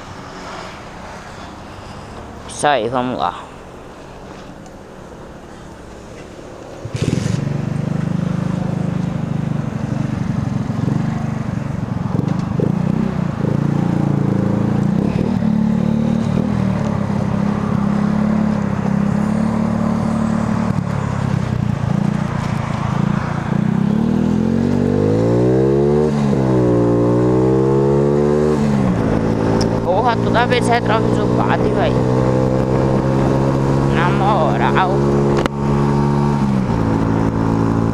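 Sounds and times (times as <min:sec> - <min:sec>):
motorcycle engine: 0:04.3 - 0:37.9.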